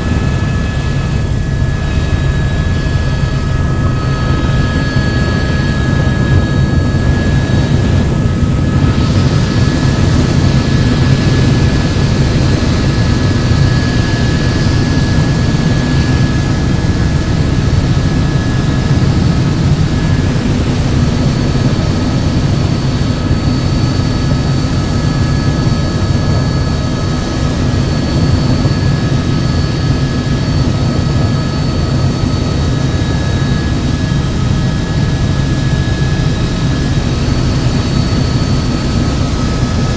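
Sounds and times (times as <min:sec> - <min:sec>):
high whining tones: 0:00.0 - 0:20.4
helicopter engine and rotor drone: 0:00.0 - 0:39.9.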